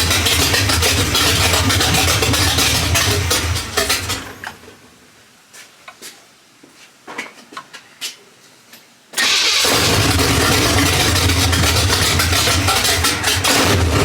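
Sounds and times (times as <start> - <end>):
pickup truck engine running: 0.0 - 4.4, 9.2 - 14.0.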